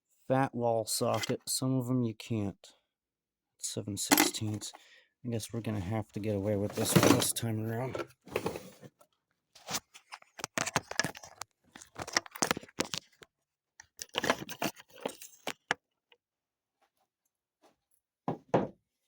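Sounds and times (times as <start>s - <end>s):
metal hand tools clinking: 4.1s - 4.4s.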